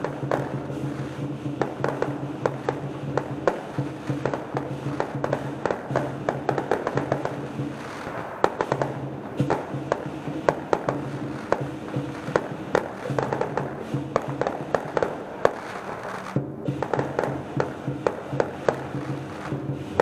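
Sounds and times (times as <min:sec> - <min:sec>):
fireworks bangs and crackles: 0:00.0 - 0:20.0.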